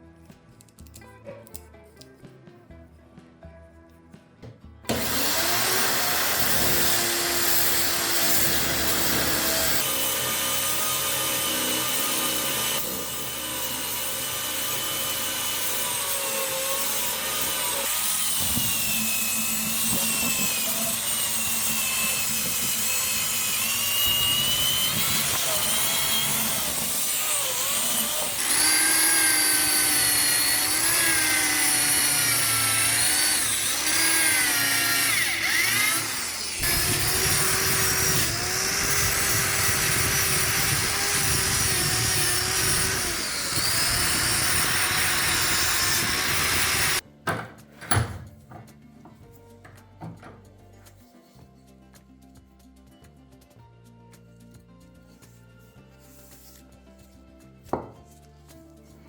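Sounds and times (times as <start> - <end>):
electric power tool running: 4.9 - 47.0.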